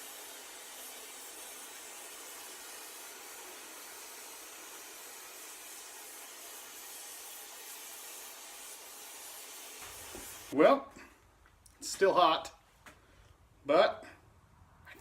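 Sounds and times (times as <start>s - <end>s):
torch flame hissing: 0.0s - 10.6s.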